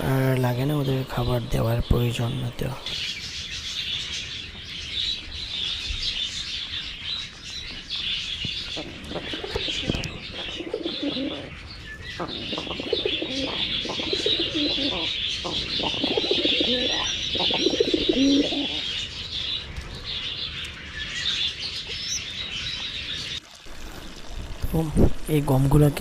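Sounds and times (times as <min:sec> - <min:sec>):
budgerigars chattering: 0:00.0 - 0:23.4
pigeons cooing: 0:08.0 - 0:24.4.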